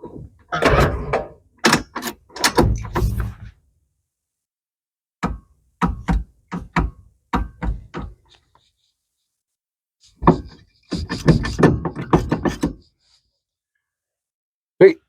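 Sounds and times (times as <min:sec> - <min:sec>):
knocks and clunks from steering column: 0:05.2 - 0:08.3, 0:10.2 - 0:12.8.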